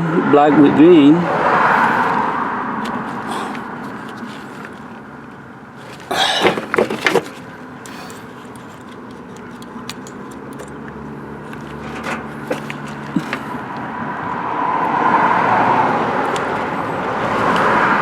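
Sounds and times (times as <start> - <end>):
rustling clatter: 1.8 - 14.1
small clicks of handled leads: 7.0 - 13.9.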